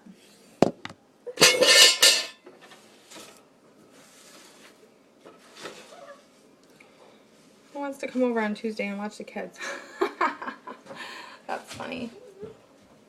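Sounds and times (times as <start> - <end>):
pots and dishes rattling: 1.4 - 2.4.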